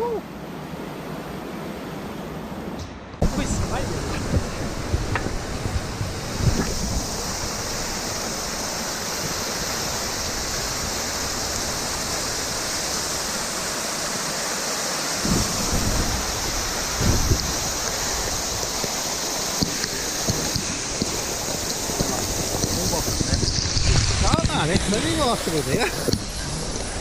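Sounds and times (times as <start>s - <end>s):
wind rumble on microphone: 3.2s - 13.4s, 15.2s - 19.0s, 19.6s - 27.0s
waterfall rushing: 3.2s - 27.0s.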